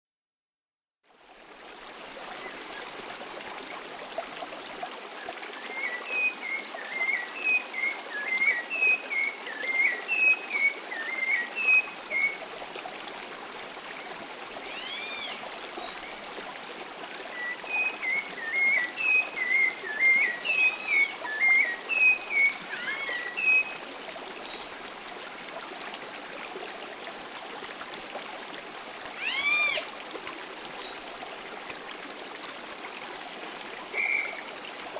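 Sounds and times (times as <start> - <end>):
running water: 1.0 - 34.9
birds arching calls: 29.1 - 29.9.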